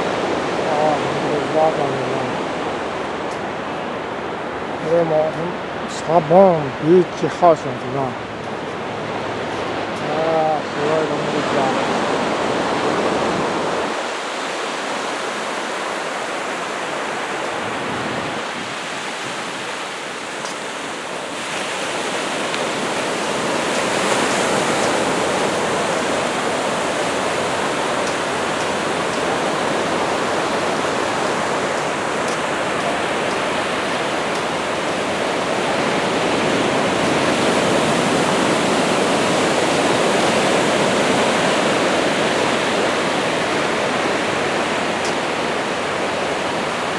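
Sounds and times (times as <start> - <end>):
surf washing onto beach: 0.0 - 46.9.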